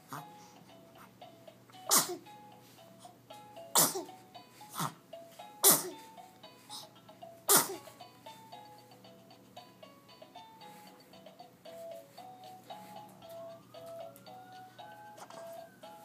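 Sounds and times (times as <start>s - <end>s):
soft background music: 0.0s - 16.0s
person sneezing: 1.9s - 2.2s, 3.8s - 4.1s, 5.6s - 6.0s, 7.5s - 7.8s.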